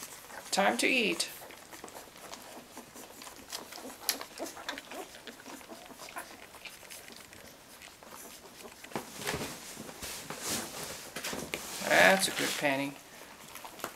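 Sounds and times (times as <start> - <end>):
puppies squeaking: 0.0 - 8.9
puppies shuffling: 0.0 - 13.9.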